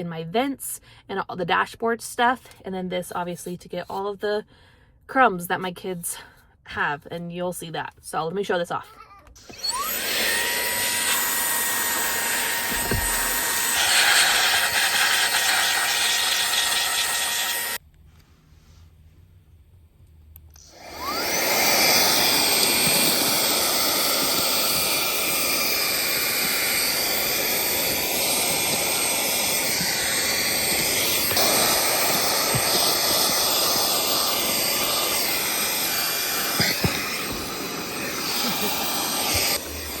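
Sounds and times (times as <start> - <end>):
car vacuum cleaner whining: 9.4 - 17.8, 20.6 - 40.0.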